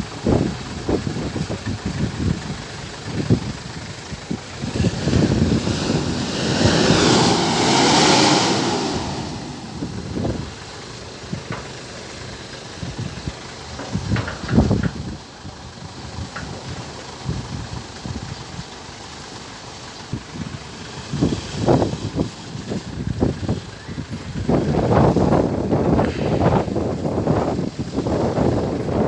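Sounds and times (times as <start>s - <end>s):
vehicle driving past: 4.7s - 10.6s.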